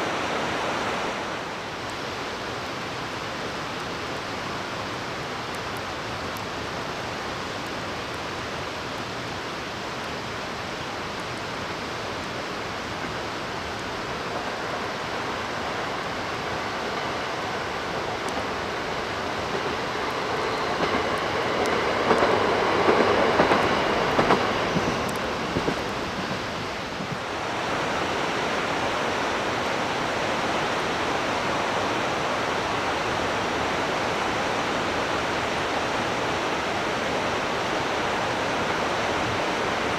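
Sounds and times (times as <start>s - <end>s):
steady rushing noise: 9.9s - 39.9s
diesel train rumbling: 12.8s - 39.9s.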